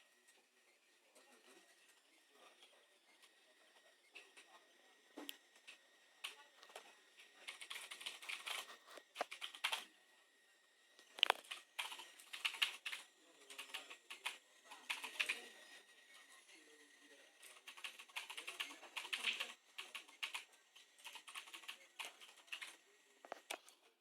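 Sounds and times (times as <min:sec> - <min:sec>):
laptop keyboard typing: 0:07.5 - 0:09.9, 0:11.1 - 0:15.4, 0:17.5 - 0:23.5.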